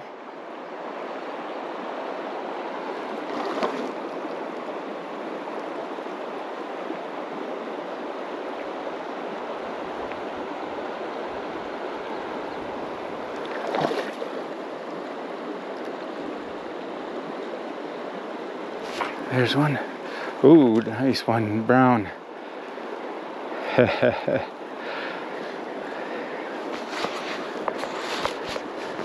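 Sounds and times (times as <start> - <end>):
creek water rushing over rocks: 0.0 - 29.0.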